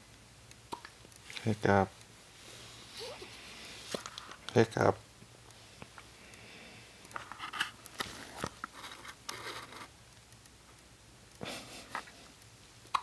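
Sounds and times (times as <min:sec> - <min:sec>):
soft rustles: 0:02.3 - 0:04.5.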